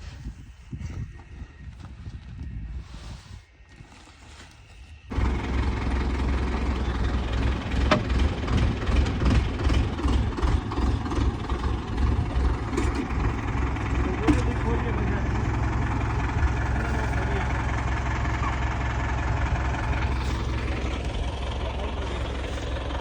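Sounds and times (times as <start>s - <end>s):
tractor diesel engine running: 5.1s - 23.0s.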